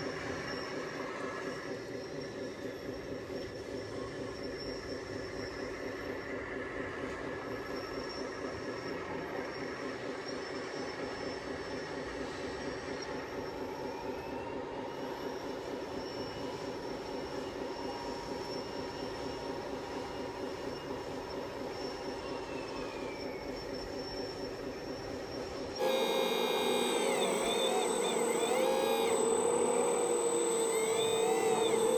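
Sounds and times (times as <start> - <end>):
small electric motors whining: 25.6 - 31.9
fast mechanical chatter: 25.7 - 31.9.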